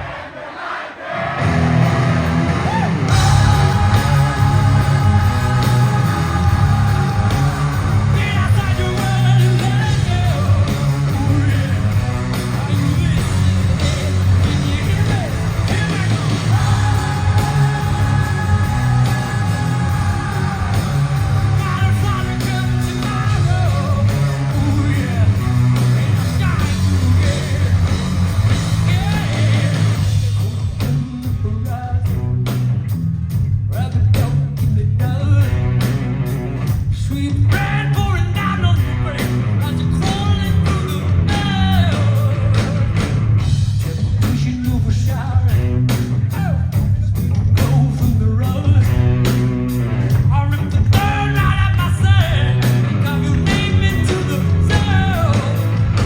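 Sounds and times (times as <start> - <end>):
lead singer singing: 0.0 - 32.6, 37.0 - 43.2, 50.2 - 56.0
rock band playing: 1.2 - 56.0.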